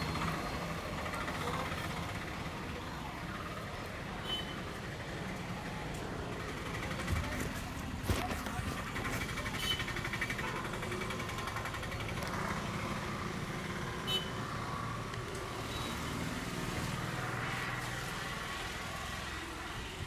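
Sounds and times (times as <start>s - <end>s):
hum of passing vehicles: 0.0s - 20.0s.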